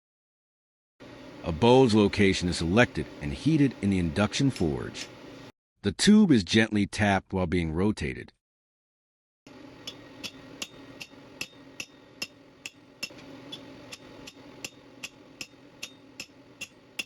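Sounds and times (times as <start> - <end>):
steady low hum: 1.0 - 5.5, 9.5 - 17.0
hammer tapping metal tube: 9.8 - 17.0.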